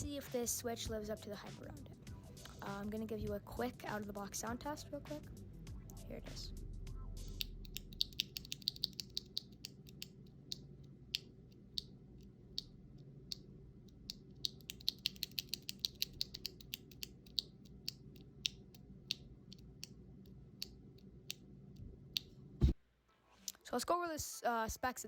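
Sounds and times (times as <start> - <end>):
mechanical keyboard typing: 7.3 - 10.1, 14.5 - 17.9.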